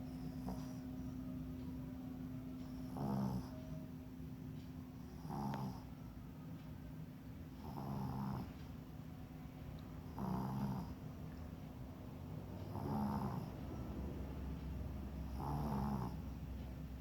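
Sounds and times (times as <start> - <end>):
animal snoring: 0.1 - 0.9, 2.8 - 3.6, 5.1 - 5.9, 7.5 - 8.6, 10.1 - 11.0, 12.7 - 13.6, 15.3 - 16.4.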